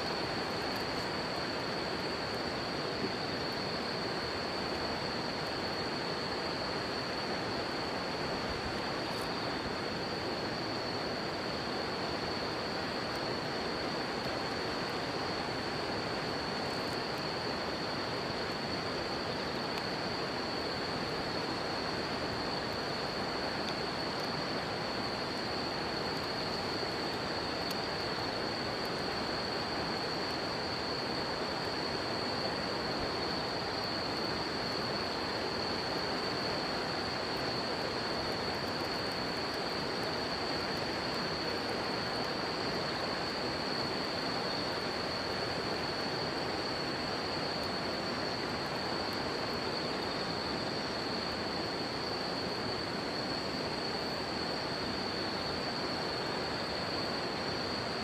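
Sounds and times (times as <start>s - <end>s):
insects trilling: 0.0s - 58.0s
campfire crackling: 11.1s - 44.0s.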